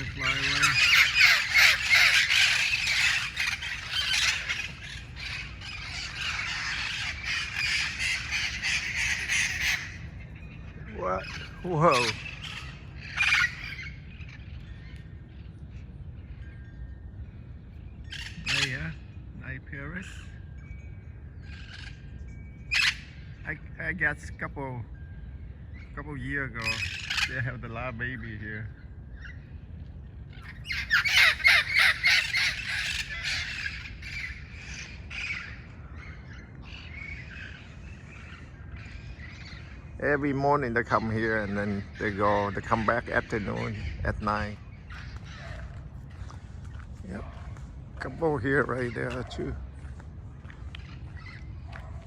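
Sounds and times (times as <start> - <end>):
parrot squawking: 0.0 - 10.3, 11.2 - 14.3, 18.1 - 19.0, 22.7 - 23.2, 26.5 - 27.7, 30.3 - 35.7
parrots squawking: 0.0 - 14.8, 18.1 - 19.2, 21.4 - 23.7, 26.0 - 29.4, 30.3 - 52.0.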